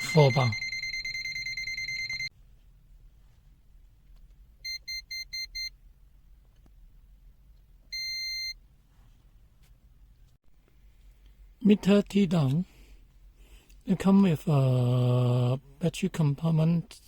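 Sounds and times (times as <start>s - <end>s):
multimeter buzzer beeping: 0.0s - 2.3s.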